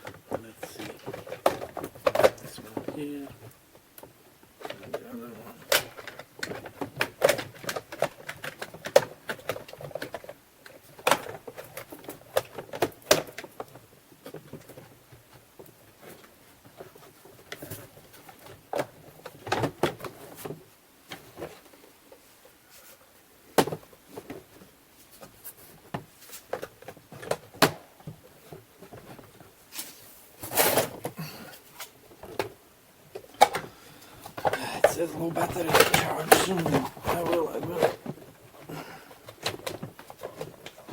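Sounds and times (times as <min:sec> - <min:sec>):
plastic parts clicking and knocking: 0:00.0 - 0:21.8, 0:23.5 - 0:29.5, 0:31.8 - 0:40.9
plastic parts clattering: 0:04.6 - 0:15.0, 0:30.4 - 0:40.9.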